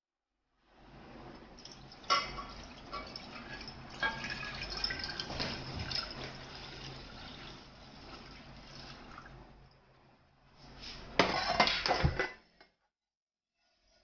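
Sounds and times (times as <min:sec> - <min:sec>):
liquid splashing in a pot: 0:01.5 - 0:09.6.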